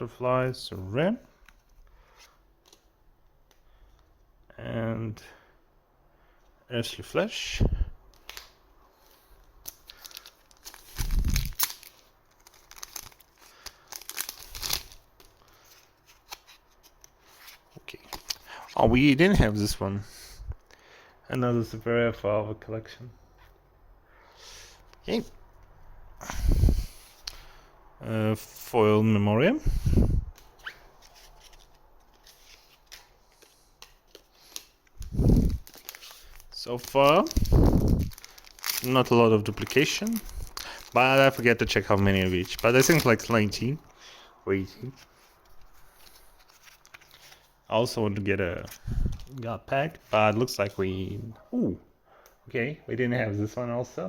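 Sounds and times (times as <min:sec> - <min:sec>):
cards being handled: 0:08.1 - 0:18.8, 0:29.7 - 0:43.6, 0:44.8 - 0:47.5
foil wrapper tearing and crinkling: 0:09.6 - 0:17.1, 0:34.4 - 0:43.5.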